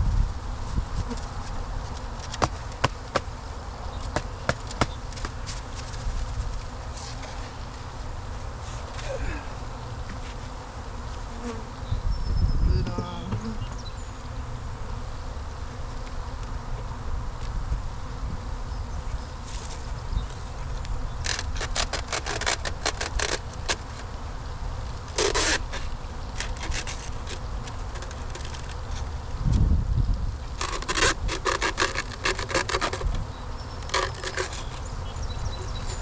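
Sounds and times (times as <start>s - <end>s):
bees buzzing: 0.3s - 29.4s, 30.4s - 36.0s
short rasp: 30.6s - 33.1s, 33.8s - 34.9s.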